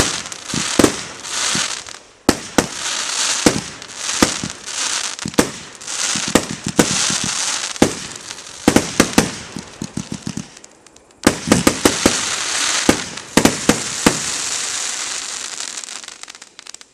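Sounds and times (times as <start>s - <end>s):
fireworks bangs: 0.0s - 16.8s
fireworks crackling hiss: 0.0s - 16.9s.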